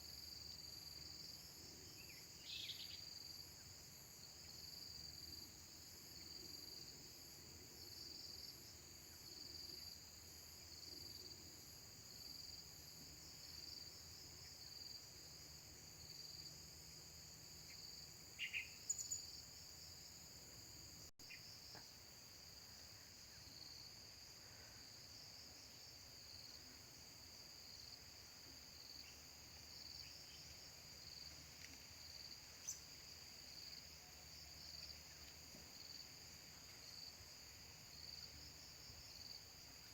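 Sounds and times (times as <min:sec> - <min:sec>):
insects trilling: 0:00.1 - 0:06.9, 0:17.4 - 0:39.9.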